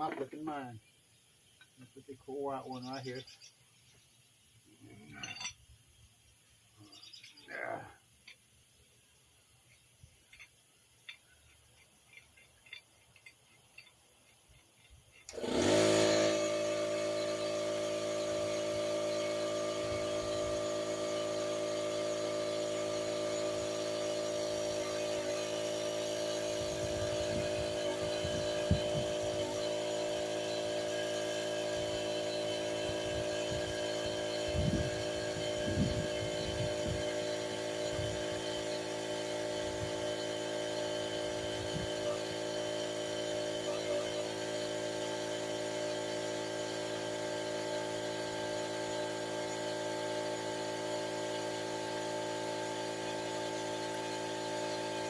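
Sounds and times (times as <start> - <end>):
steady machine hum: 14.6 - 55.0.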